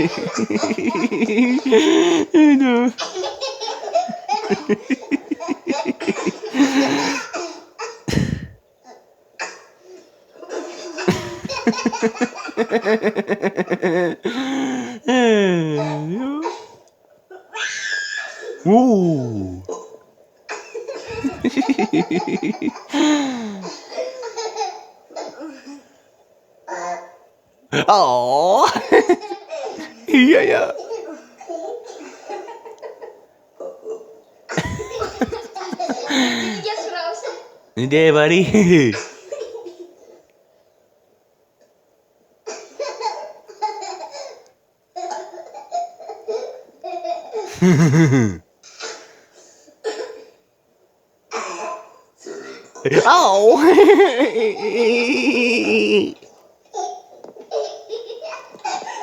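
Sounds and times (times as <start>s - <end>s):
young child laughing: 0.0s - 3.2s, 4.0s - 7.4s, 8.1s - 8.6s, 11.1s - 16.5s, 18.7s - 19.6s, 21.0s - 23.8s, 27.8s - 30.1s, 34.6s - 36.7s, 47.5s - 48.4s, 52.9s - 56.2s.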